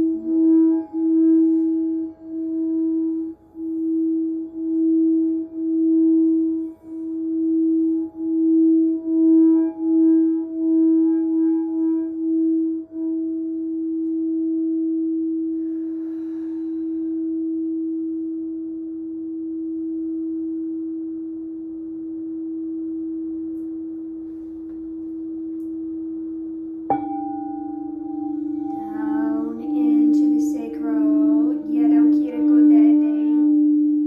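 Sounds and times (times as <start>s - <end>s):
singing bowl low steady tone: 0.0s - 34.0s
higher bowl struck ringing: 24.8s - 34.0s.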